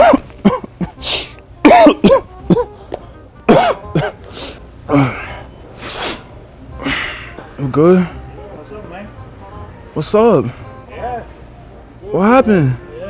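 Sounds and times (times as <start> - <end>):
man coughing: 0.0 - 5.5
man fake sneezing: 0.0 - 7.4.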